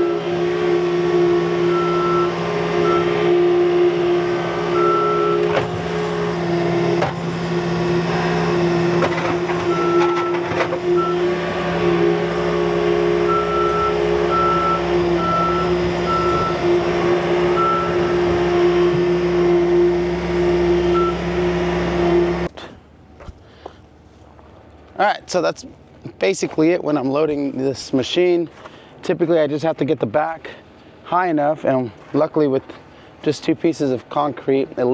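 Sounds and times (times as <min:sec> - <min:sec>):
diesel engine running under load: 0:00.0 - 0:29.0
back-up alarm beeps: 0:01.6 - 0:06.1, 0:09.4 - 0:19.0, 0:20.6 - 0:21.3.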